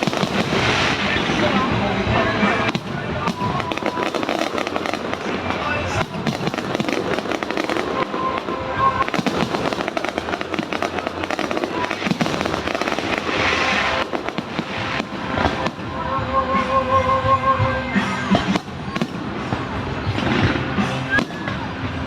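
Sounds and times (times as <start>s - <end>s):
hissing shower of crackle: 0.0s - 16.0s
fireworks crackling and popping: 0.0s - 16.9s, 17.8s - 22.0s
music: 0.0s - 22.0s.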